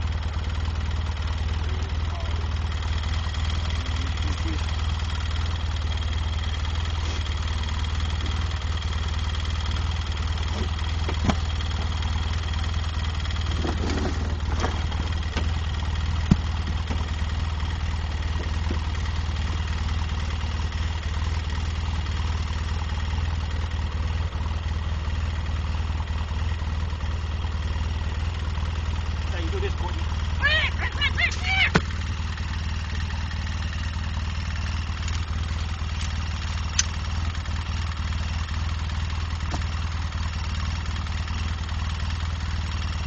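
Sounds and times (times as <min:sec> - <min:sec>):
engine idling: 0:00.0 - 0:43.0
sharp knocks and clanks: 0:16.2 - 0:17.2.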